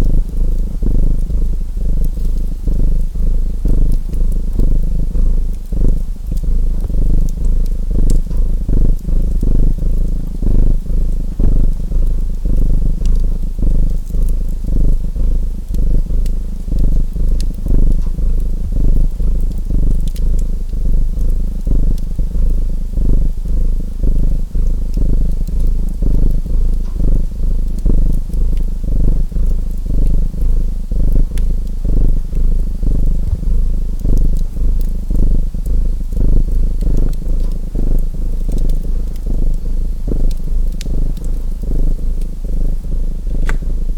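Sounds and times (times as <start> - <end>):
cat purring: 0.0 - 43.9
wood fire crackling: 0.0 - 43.9.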